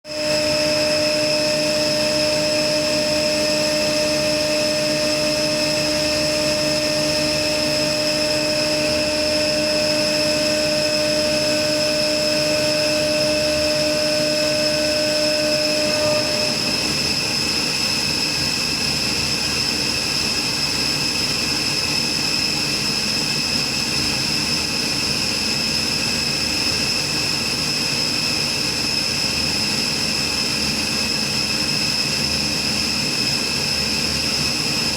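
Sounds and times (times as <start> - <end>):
low machine hum: 0.1 - 17.8
chiller high-pitched whine: 0.1 - 34.9.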